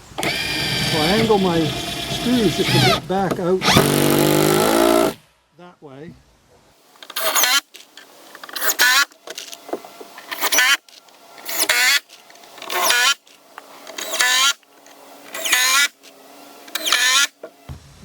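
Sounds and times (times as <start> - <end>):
power drill whirring: 0.0 - 5.2, 7.0 - 17.7.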